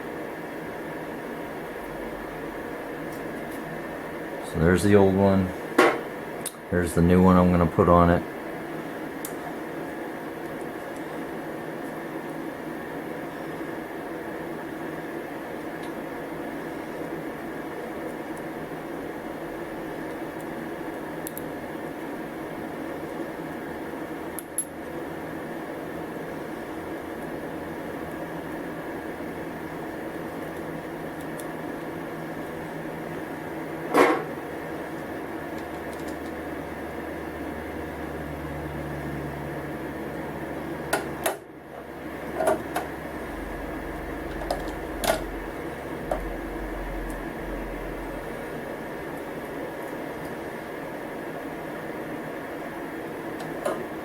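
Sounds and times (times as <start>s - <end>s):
steady hum: 0.0s - 54.0s.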